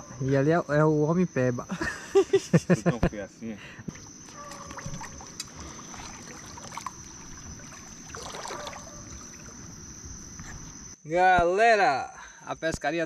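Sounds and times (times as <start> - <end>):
high-pitched insect trill: 0.0 - 13.0
light splashes from wading: 3.9 - 9.8
shallow water sloshing: 3.9 - 10.7.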